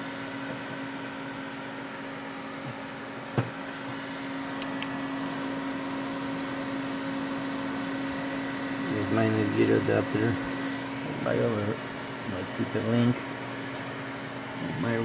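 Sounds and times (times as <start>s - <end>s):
electrical hum with fan whir: 0.0s - 15.0s.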